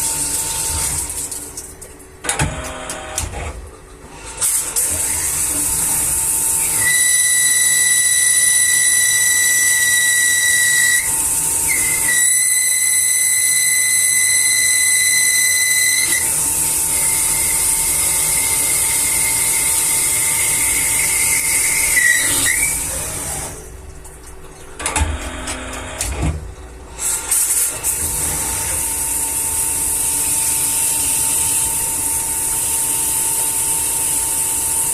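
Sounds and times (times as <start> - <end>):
machine high whine: 6.4 - 23.5.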